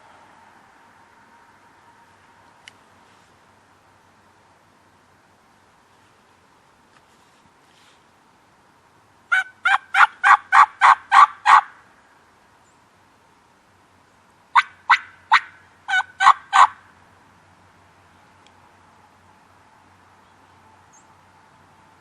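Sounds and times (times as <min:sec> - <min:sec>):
turkey yelping: 0:09.3 - 0:11.7, 0:14.6 - 0:16.8.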